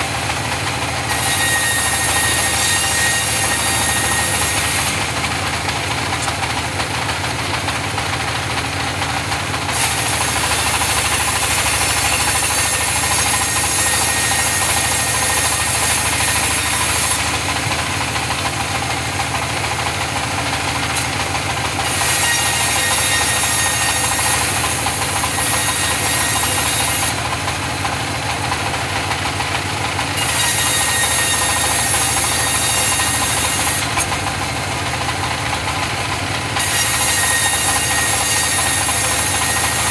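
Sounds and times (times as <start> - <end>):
saw cutting timber hissing: 0.0 - 39.9
sawmill saw droning: 0.0 - 39.9.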